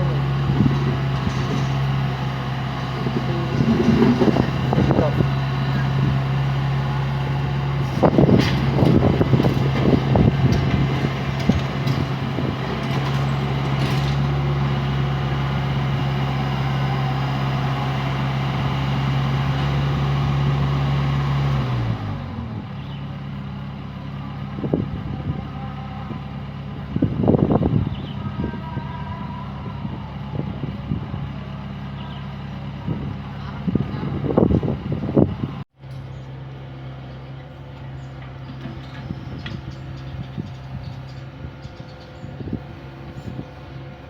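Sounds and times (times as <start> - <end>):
excavator diesel engine: 0.0 - 44.0
demolition debris clattering: 0.6 - 6.0, 7.7 - 14.5.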